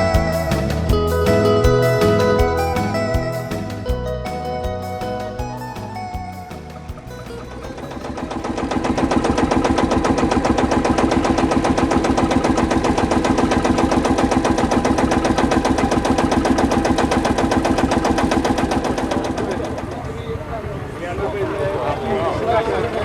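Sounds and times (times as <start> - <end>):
tractor diesel engine running: 0.0 - 20.8.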